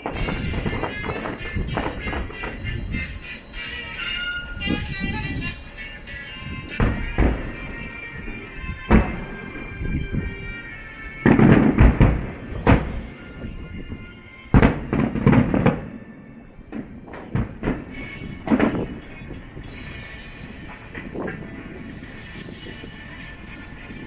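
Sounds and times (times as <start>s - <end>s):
background music: 0.0s - 24.0s
fireworks bangs and booms: 0.0s - 24.0s
fireworks crackling: 0.0s - 24.0s.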